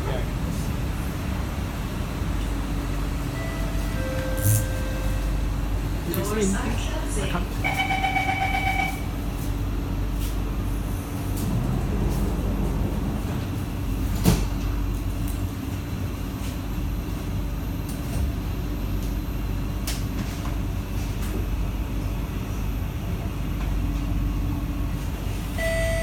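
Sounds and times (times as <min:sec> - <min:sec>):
train interior low rumble: 0:00.0 - 0:26.0
faint hum: 0:02.4 - 0:10.1.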